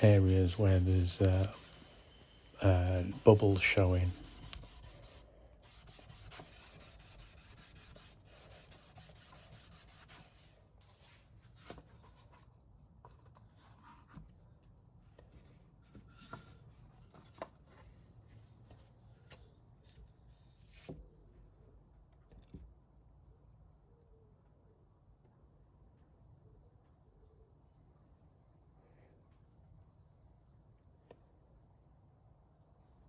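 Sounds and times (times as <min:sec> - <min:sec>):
cloth rubbing on wood: 0:00.0 - 0:10.6.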